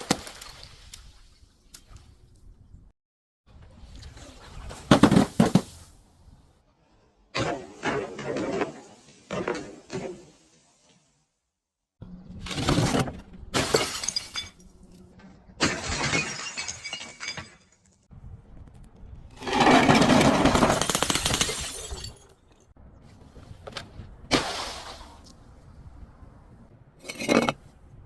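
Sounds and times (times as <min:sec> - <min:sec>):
glass bottles breaking and crunching: 0:13.6 - 0:14.8, 0:15.6 - 0:17.9, 0:19.6 - 0:22.7.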